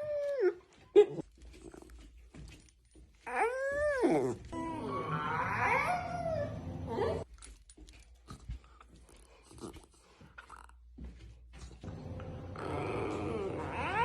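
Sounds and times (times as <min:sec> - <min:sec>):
dog whining: 0:03.2 - 0:07.3, 0:12.6 - 0:14.0.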